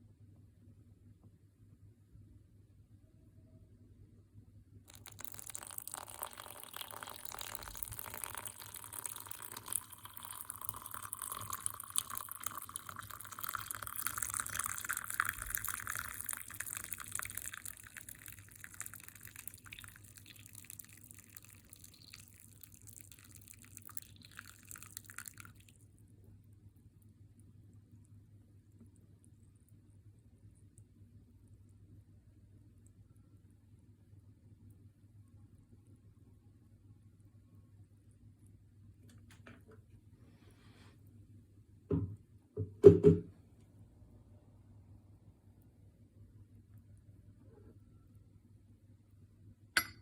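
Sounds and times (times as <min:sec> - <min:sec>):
hot water pouring into cup: 0:04.9 - 0:25.8.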